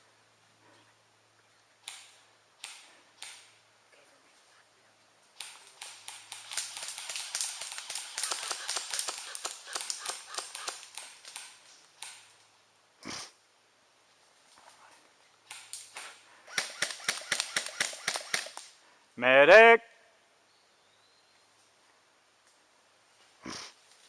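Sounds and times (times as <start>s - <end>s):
airsoft gun shots: 16.5s - 18.6s.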